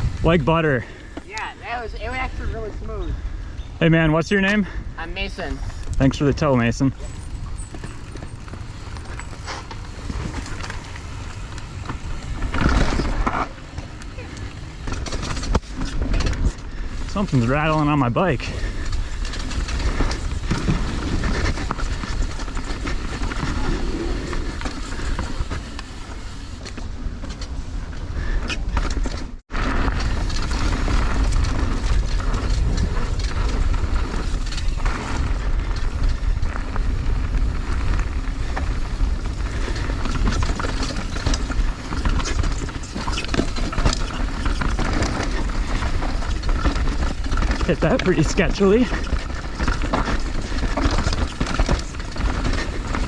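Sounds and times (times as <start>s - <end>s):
wind rushing over microphone: 0.0s - 3.6s, 29.5s - 53.0s
bike tyre noise: 0.0s - 53.0s
loose part rattling on bike: 5.6s - 53.0s.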